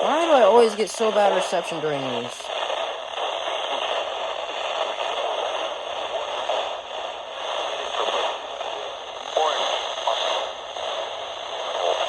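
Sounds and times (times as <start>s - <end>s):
radio static hiss: 0.0s - 12.0s
faint radio voice: 7.8s - 9.7s.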